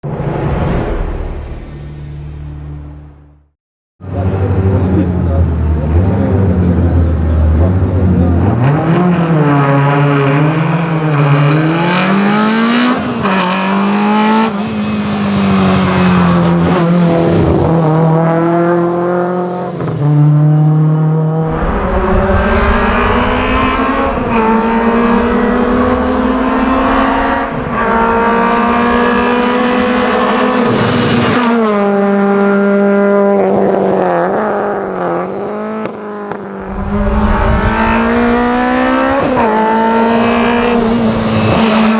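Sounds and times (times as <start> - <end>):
racing car engines revving: 4.1 - 41.9.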